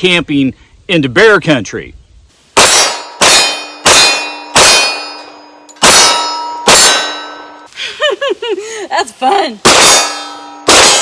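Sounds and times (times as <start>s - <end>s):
pistol shots: 2.6s - 7.4s, 9.7s - 11.0s
steel plate ringing: 2.6s - 7.7s, 9.6s - 11.0s.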